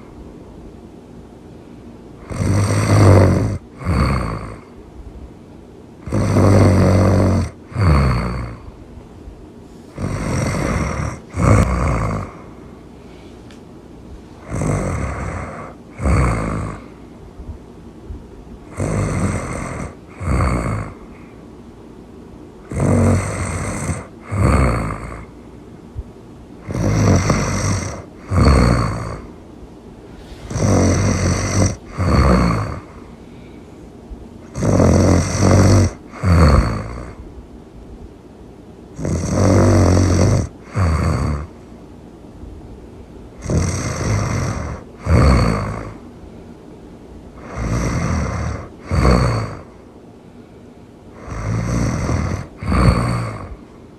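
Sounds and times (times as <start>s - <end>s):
loud snoring: 2.2s - 4.7s, 6.0s - 8.7s, 9.9s - 12.6s, 14.4s - 17.0s, 18.7s - 21.3s, 22.6s - 25.3s, 26.6s - 29.4s, 30.1s - 33.1s, 34.4s - 37.2s, 39.0s - 41.6s, 43.4s - 46.0s, 47.3s - 49.8s, 51.1s - 53.7s.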